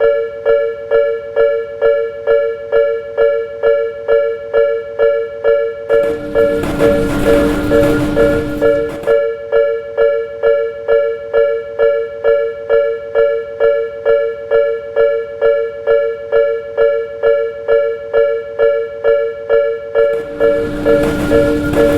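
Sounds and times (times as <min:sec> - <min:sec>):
rumbling noise with low hum: 0:05.9 - 0:09.2, 0:20.1 - 0:21.9.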